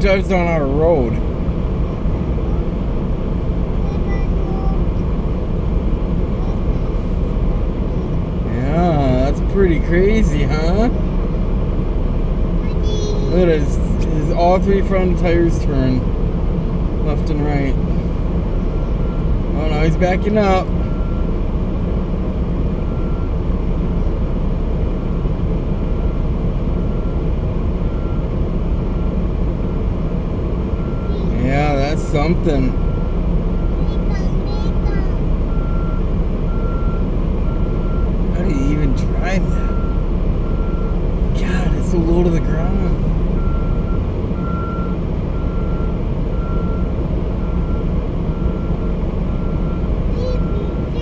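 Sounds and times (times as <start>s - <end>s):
low engine rumble: 0.0s - 51.0s
reversing alarm beeping: 39.4s - 41.0s, 43.4s - 50.9s.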